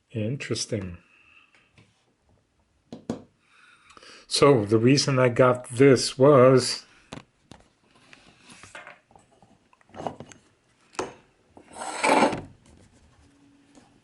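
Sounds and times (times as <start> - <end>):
objects scraping together: 11.6 - 12.6.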